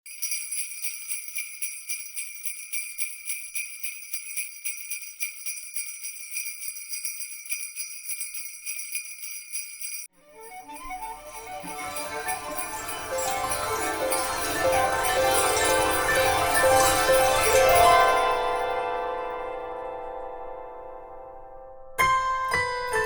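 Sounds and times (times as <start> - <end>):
bells jingling: 0.1 - 20.3
music: 10.1 - 23.0.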